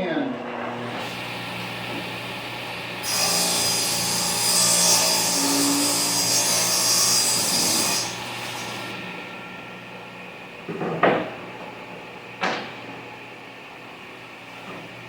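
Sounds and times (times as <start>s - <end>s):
table saw cutting plywood: 0.2s - 9.8s.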